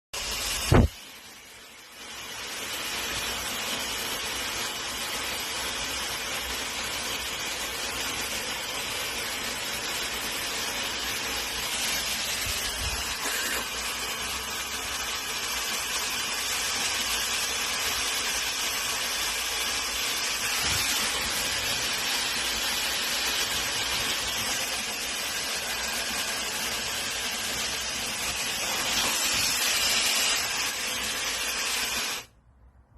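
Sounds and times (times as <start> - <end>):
hair dryer blowing: 0.2 - 32.3.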